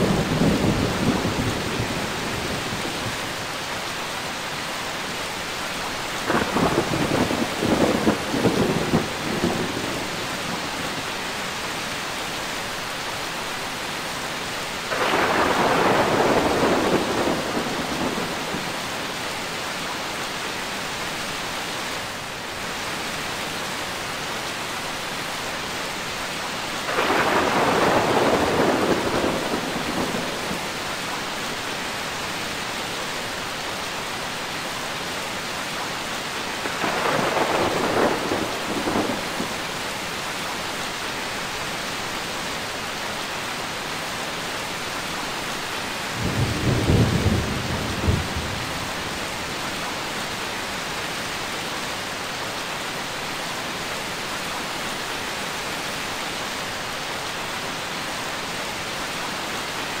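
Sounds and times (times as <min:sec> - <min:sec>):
steady rain: 0:00.0 - 1:00.0
thunder rumbling: 0:06.3 - 0:10.8, 0:14.9 - 0:19.0, 0:26.9 - 0:30.8, 0:36.6 - 0:39.6, 0:46.2 - 0:49.3.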